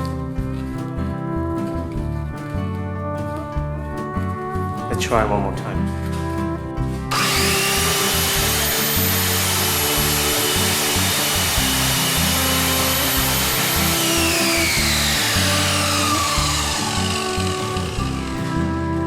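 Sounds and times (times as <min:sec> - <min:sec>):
saw blade spinning down: 0:07.1 - 0:18.8
mitre saw running with high whine: 0:07.1 - 0:19.0.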